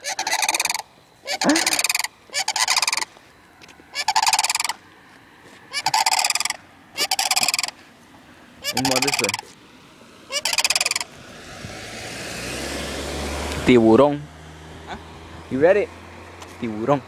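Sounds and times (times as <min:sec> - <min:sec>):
cranes bugling: 0:00.0 - 0:11.3.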